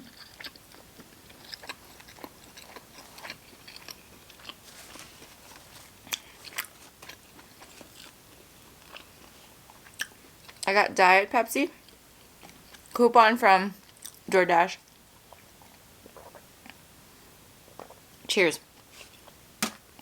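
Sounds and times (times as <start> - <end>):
person chewing food: 0.0 - 10.7, 11.8 - 13.0, 13.8 - 14.2, 14.9 - 16.8.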